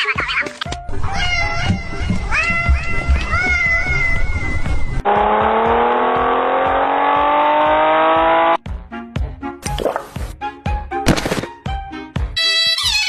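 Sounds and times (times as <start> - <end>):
cat meowing: 1.0 - 4.6
muffled rising drone: 4.0 - 8.6
music beat: 5.0 - 13.0.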